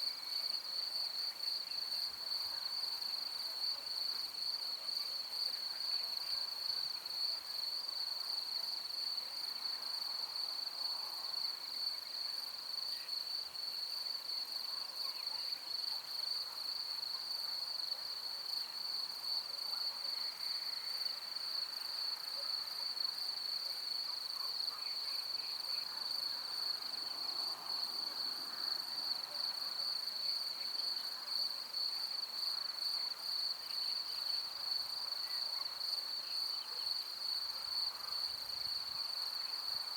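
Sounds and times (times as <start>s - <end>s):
faint background sounds: 0.0s - 39.9s.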